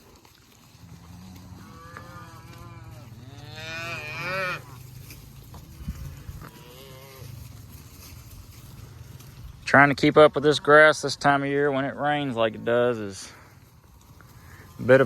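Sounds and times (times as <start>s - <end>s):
cattle mooing: 0.8s - 7.5s.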